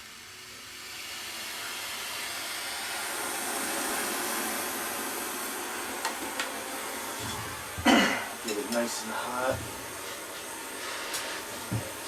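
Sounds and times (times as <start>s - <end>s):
gas torch flame hissing: 0.0s - 12.0s.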